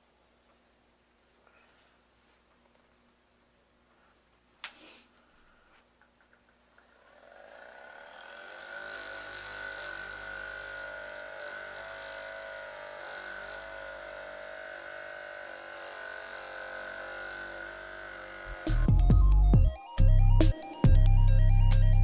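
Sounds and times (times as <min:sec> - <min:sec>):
small electric motor whining: 0:06.8 - 0:19.6.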